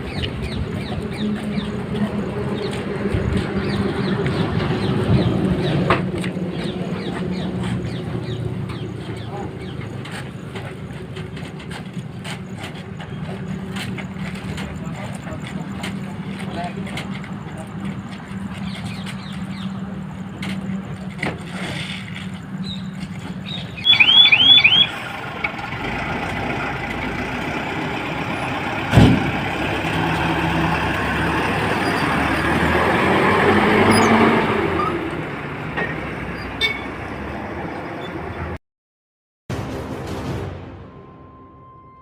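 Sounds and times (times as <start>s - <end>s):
road traffic: 0.0s - 38.6s, 39.5s - 42.0s
warbling horn or siren: 23.8s - 25.1s, 40.7s - 42.0s.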